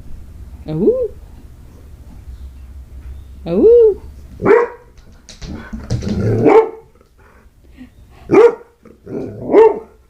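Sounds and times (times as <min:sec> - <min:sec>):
dog barking: 0:04.4 - 0:04.9, 0:06.4 - 0:06.9, 0:08.3 - 0:08.8, 0:09.4 - 0:10.0.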